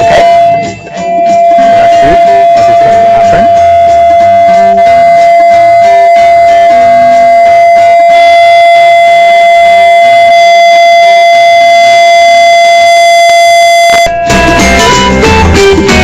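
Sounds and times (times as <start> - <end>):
strummed guitar music: 0.0 - 8.3, 14.0 - 16.0
loud steady tone from loudspeaker: 0.0 - 16.0.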